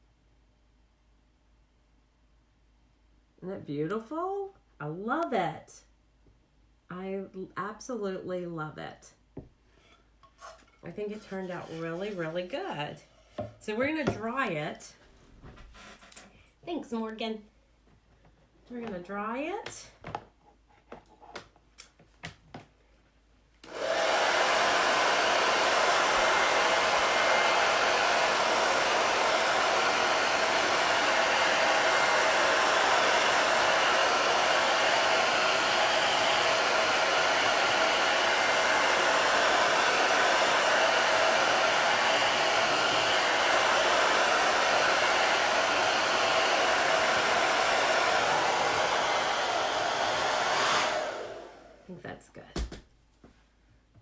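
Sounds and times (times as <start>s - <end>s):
hot-air dryer blowing: 23.6s - 51.9s.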